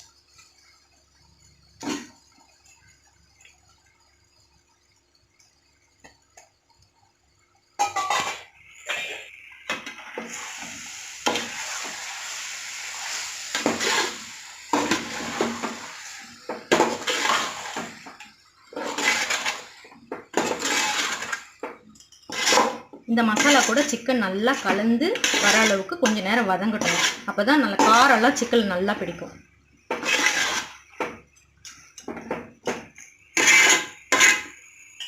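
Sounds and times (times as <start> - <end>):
oil sizzling: 0.0 - 35.0
metal spoon scraping a pot: 16.8 - 17.9, 18.7 - 28.2, 29.9 - 30.9, 33.4 - 34.6.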